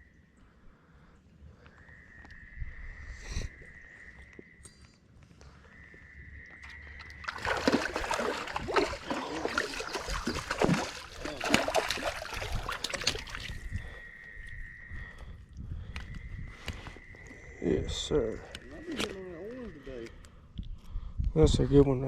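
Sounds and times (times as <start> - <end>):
water splashing and sloshing: 6.5 - 14.0.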